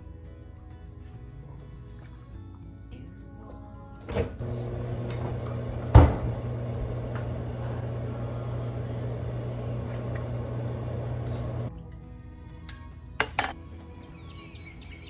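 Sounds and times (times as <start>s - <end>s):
appliance motor hum: 4.1s - 11.7s.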